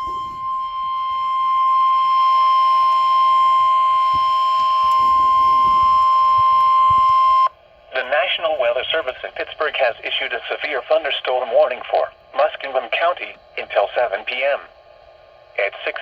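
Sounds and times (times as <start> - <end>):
steady warning alarm tone: 0.0 - 8.1.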